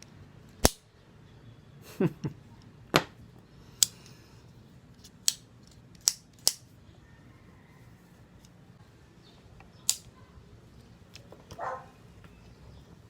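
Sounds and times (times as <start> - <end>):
sharp clicks of tools and parts: 0.0 - 0.8, 5.0 - 6.7, 9.9 - 10.1.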